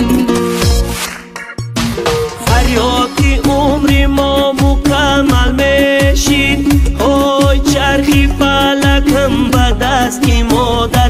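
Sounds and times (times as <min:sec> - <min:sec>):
pop-folk instrumental music: 0:00.0 - 0:11.0
deep gliding kick drums: 0:01.8 - 0:11.0.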